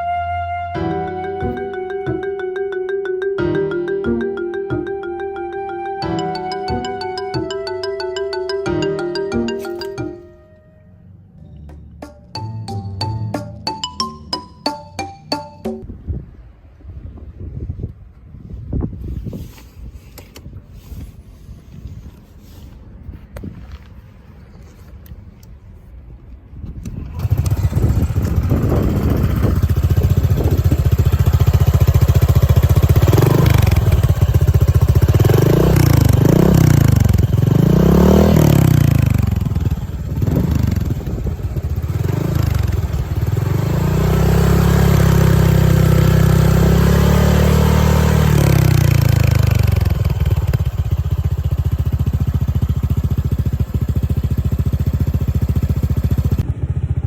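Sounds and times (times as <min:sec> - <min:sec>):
scooter engine revving: 0:26.9 - 0:57.0.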